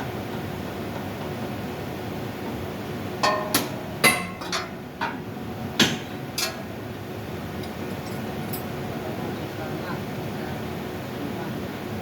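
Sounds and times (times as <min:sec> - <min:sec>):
sharp metal knocks: 0:03.2 - 0:04.8.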